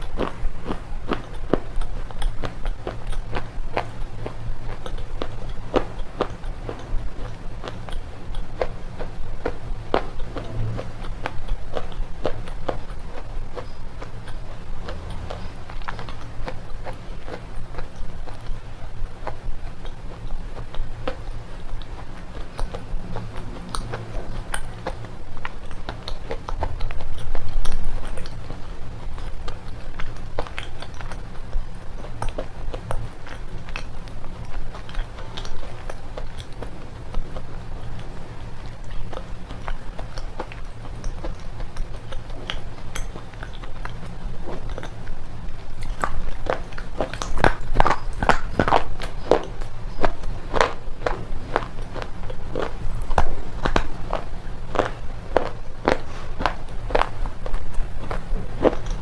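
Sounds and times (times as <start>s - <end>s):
crunching and chewing: 0.0s - 59.0s.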